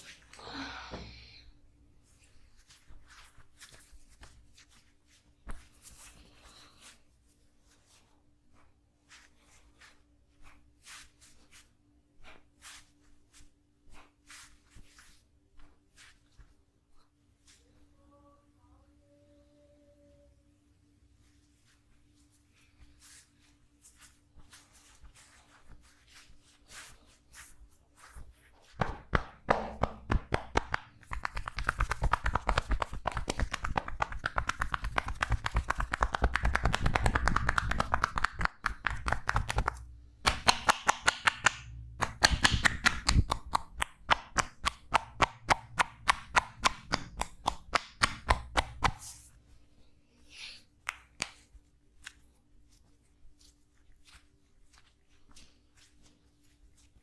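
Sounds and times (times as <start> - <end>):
hands slapping body in massage: 23.8 - 49.3, 50.8 - 52.3.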